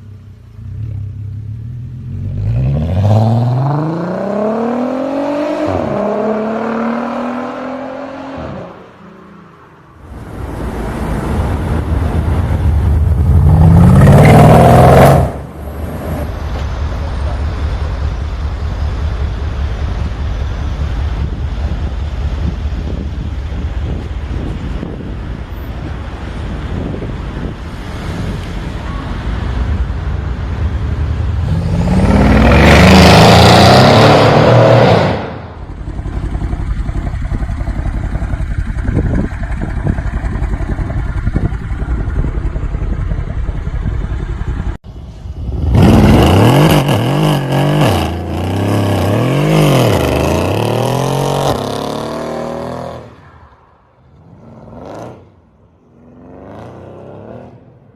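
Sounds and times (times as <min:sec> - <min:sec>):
car engine revving: 0:10.0 - 0:21.9, 0:28.0 - 0:44.8, 0:45.4 - 0:53.2.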